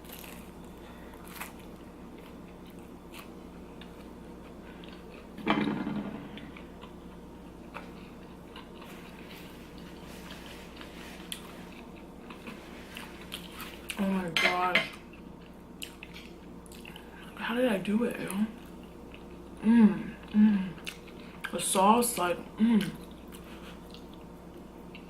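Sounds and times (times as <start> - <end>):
person chewing food: 0.0 - 5.4, 6.3 - 14.0, 15.0 - 17.2, 18.6 - 19.6, 20.2 - 21.5, 22.8 - 25.0.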